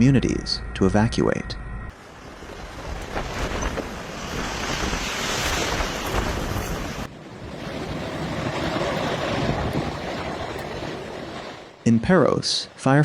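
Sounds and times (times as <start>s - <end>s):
strong wind on microphone: 2.1s - 11.8s.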